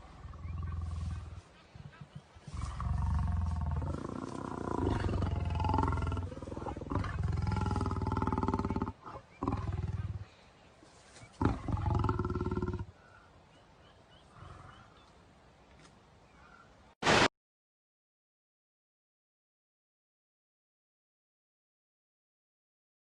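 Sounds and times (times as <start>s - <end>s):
deep animal calls: 0.0s - 10.4s.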